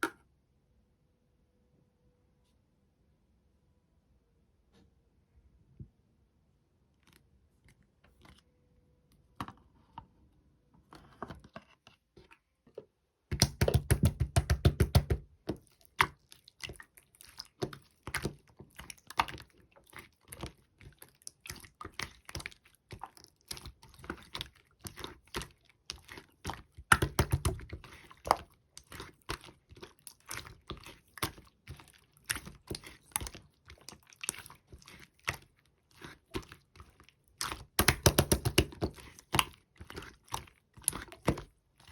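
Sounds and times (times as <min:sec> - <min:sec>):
slime squishing: 0:13.3 - 0:41.9.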